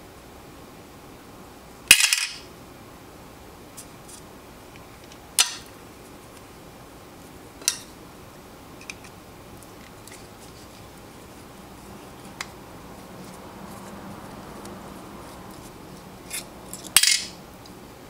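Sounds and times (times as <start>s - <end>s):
metal tools clinking: 16.3s - 17.4s.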